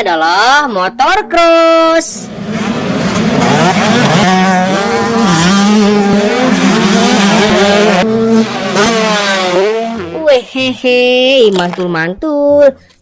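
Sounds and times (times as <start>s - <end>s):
motorcycle engine revving: 2.1s - 10.5s.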